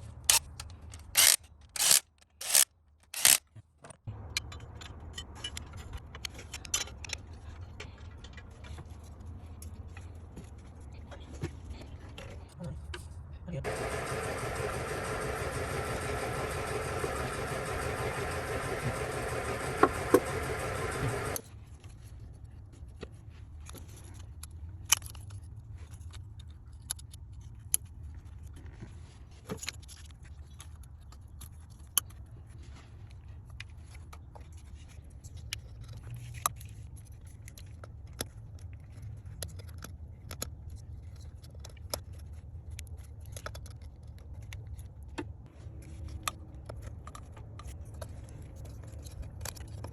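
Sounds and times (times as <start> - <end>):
car engine running: 13.6 - 21.4
low hum: 13.6 - 21.4.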